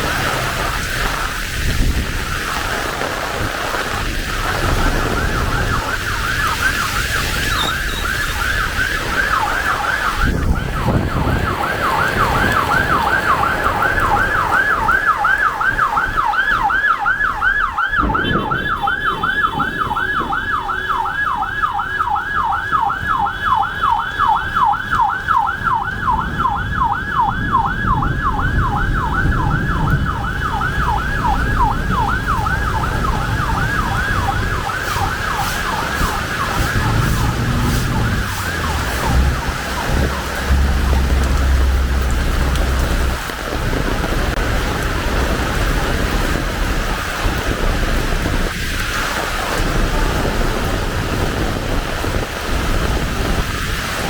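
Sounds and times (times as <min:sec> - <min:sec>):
rain hiss: 0:00.0 - 0:11.2, 0:30.7 - 0:54.0
emergency siren yelping: 0:00.0 - 0:54.0.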